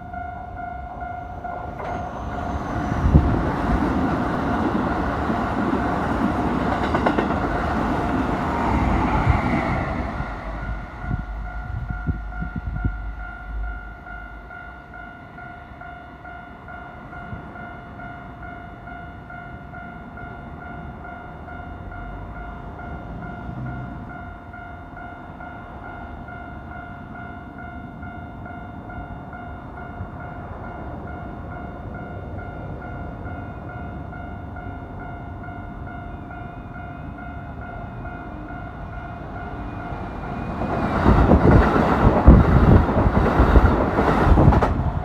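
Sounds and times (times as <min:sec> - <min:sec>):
level crossing warning bell: 0:00.0 - 0:45.0
train rumble and wheel noise: 0:00.0 - 0:45.0
train wheel clacks: 0:01.5 - 0:13.0, 0:39.2 - 0:45.0.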